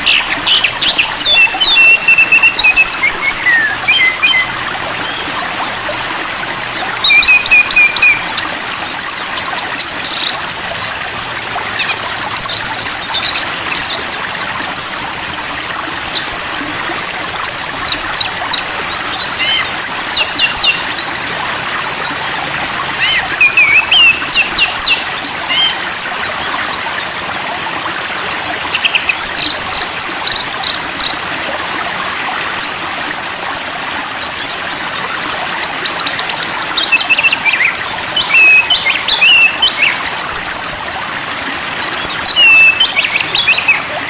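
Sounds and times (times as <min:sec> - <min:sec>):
songbirds chirping: 0:33.4 - 0:44.0.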